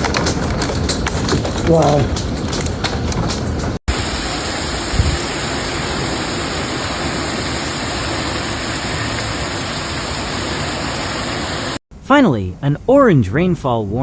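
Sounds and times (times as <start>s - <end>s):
heavy rainstorm: 0.0s - 3.3s, 3.9s - 11.8s.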